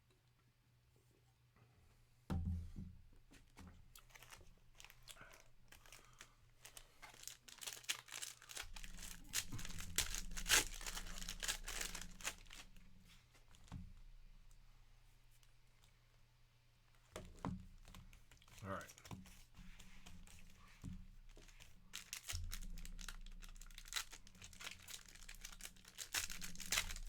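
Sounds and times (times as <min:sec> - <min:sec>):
plastic wrapping crinkling: 0:03.9 - 0:13.8, 0:16.9 - 0:27.0.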